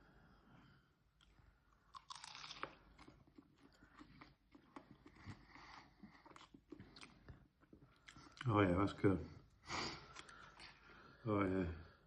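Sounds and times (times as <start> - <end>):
person chewing crunchy food: 1.1 - 8.5.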